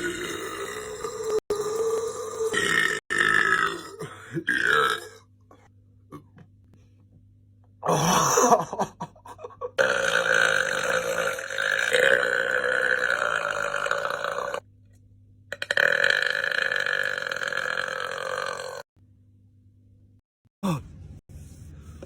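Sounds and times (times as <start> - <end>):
man belching: 0.0 - 5.2, 7.8 - 8.8, 9.8 - 14.6, 15.6 - 18.8.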